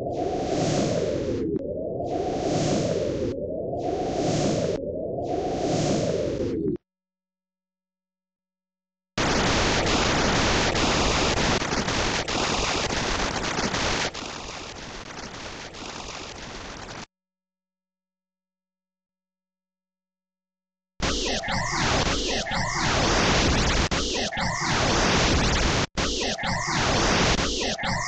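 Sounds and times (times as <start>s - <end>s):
static hiss with crackles: 9.2s - 17.1s.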